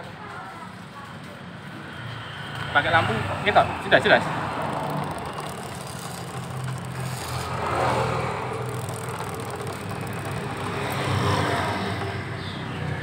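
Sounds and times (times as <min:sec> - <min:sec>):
motorcycle drive knocking: 0:04.0 - 0:13.0.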